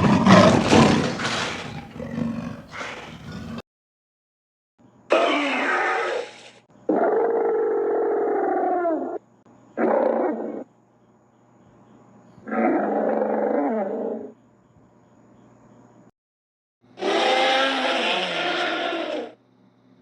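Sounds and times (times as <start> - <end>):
growling creature calls: 5.1 - 9.2, 17.0 - 19.4.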